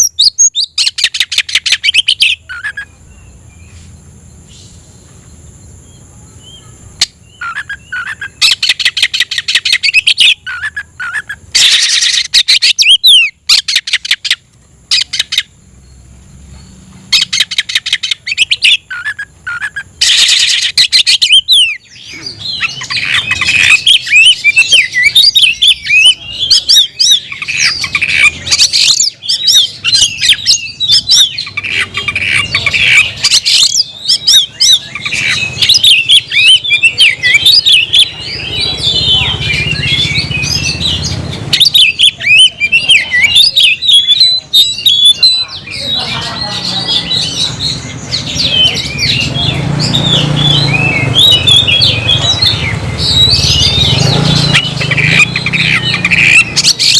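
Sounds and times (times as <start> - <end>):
songbird rattling and whistling: 7.0 - 15.6, 16.6 - 45.4.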